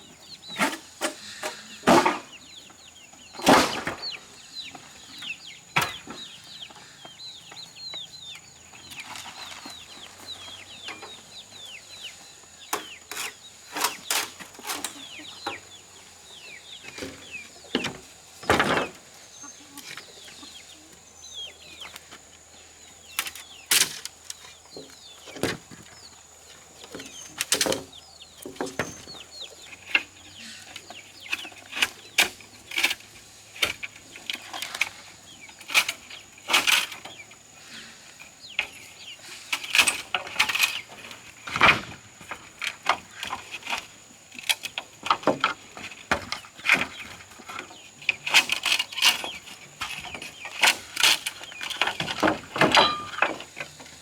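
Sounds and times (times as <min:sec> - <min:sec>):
birds chirping faintly: 0:00.0 - 0:54.0.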